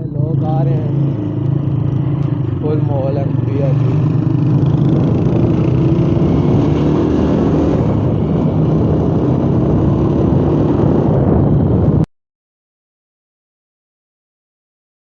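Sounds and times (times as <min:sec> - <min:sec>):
motorcycle engine running: 0:00.0 - 0:12.0
road noise: 0:00.0 - 0:12.1.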